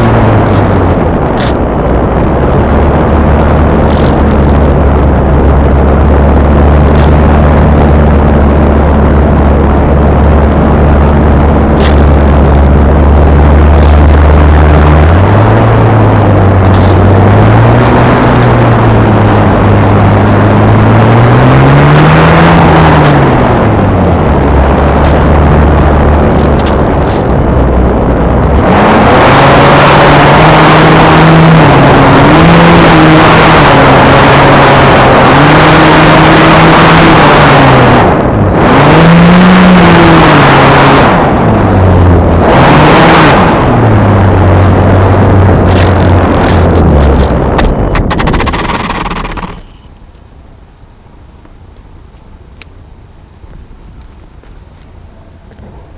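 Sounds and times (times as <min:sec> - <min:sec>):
loud rushing noise: 0:00.0 - 0:50.0
model airplane motor: 0:47.9 - 0:49.7.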